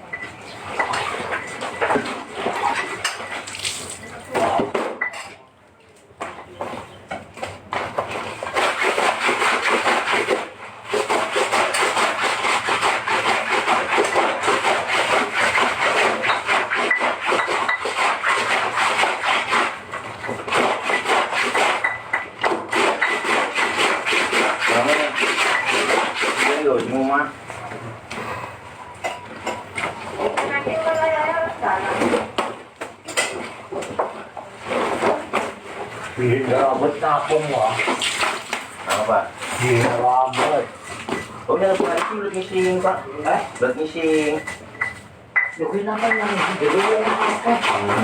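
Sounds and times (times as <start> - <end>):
cloth scrubbed by hand: 8.1 - 21.9, 22.7 - 27.1, 45.8 - 48.0.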